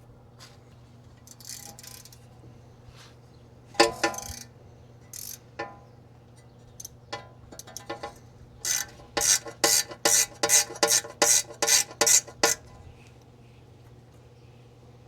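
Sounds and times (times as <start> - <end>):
hand tools clanking on metal: 3.8 - 4.4, 7.1 - 12.7.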